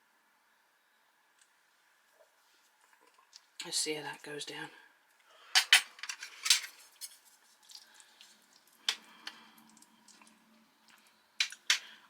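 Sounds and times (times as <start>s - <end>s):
person eating food: 7.6s - 12.0s.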